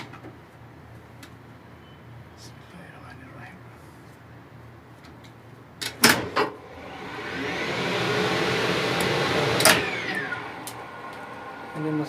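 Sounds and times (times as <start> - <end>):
motor whine: 6.5 - 12.0.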